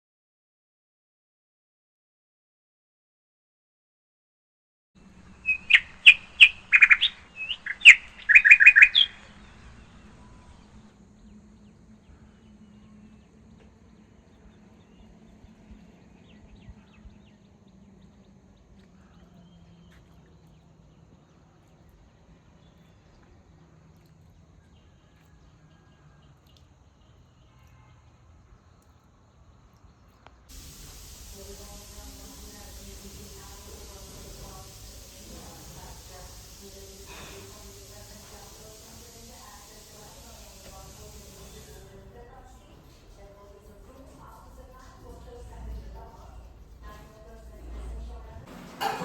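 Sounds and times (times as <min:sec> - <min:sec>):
bird chirping: 0:05.2 - 0:10.8
faint low steady hum: 0:30.5 - 0:48.5.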